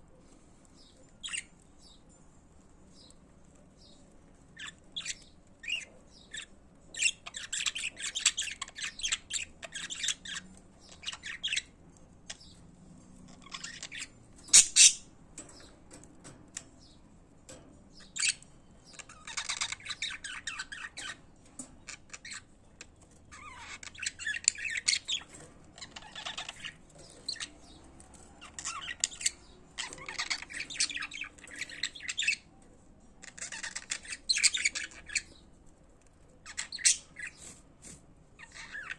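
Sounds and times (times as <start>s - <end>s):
budgerigars chattering and warbling: 4.6s - 11.7s, 13.3s - 15.7s, 18.0s - 21.2s, 23.3s - 27.8s, 28.4s - 32.5s, 33.2s - 35.4s, 36.4s - 38.9s.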